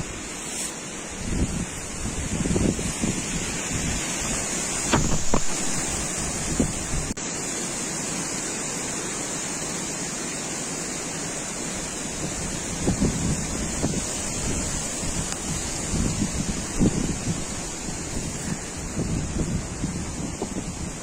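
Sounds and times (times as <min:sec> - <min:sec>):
strong wind buffeting microphone: 0:01.1 - 0:07.2, 0:12.1 - 0:21.0.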